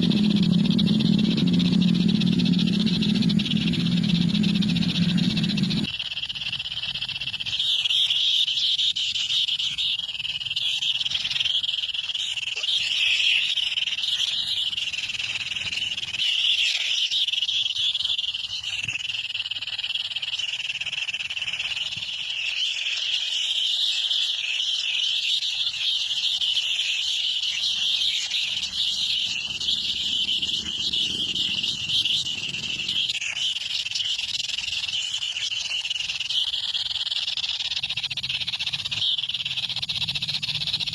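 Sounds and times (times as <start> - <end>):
chorus of high chirping calls: 0.0 - 5.9, 21.0 - 40.9.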